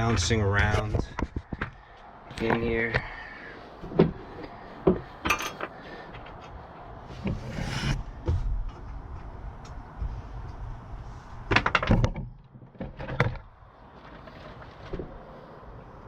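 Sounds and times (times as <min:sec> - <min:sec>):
short scrape: 0:07.1 - 0:08.4.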